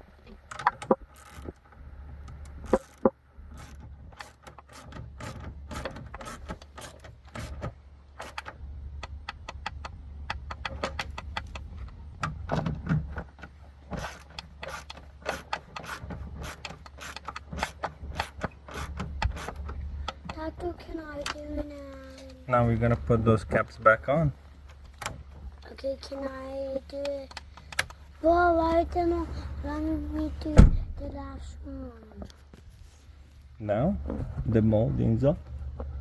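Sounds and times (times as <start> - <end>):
steady low hum: 0.0 - 36.0
ratchet wrench clicking: 14.0 - 20.2.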